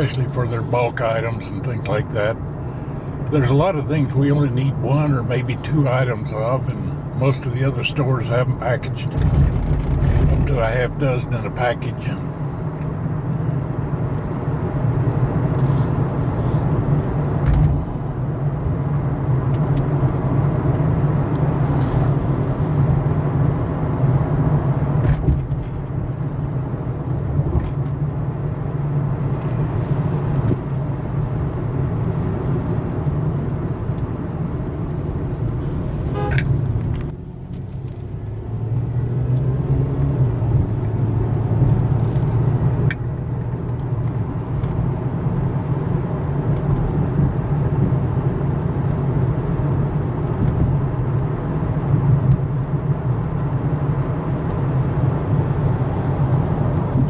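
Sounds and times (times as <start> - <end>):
car engine hum: 0.0 - 57.0
tyre road noise: 0.0 - 57.0.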